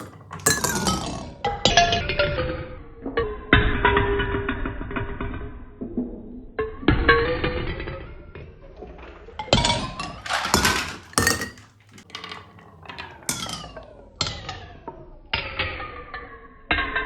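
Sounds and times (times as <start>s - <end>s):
marbles knocking on track: 0.0s - 0.8s, 11.1s - 11.6s.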